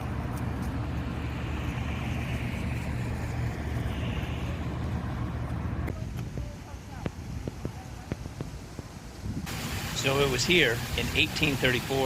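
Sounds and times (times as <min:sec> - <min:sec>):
motor engine humming: 0:00.0 - 0:08.5.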